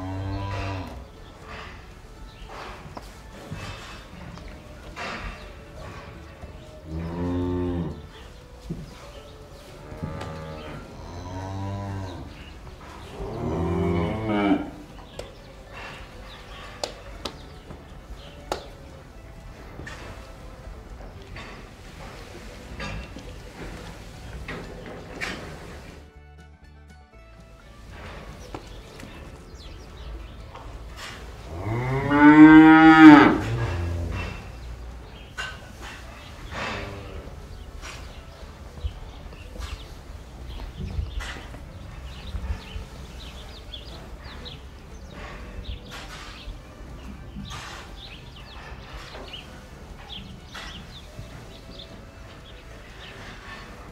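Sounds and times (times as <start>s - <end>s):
cattle mooing: 0.0s - 1.1s, 6.8s - 8.2s, 9.8s - 15.0s, 31.4s - 34.6s.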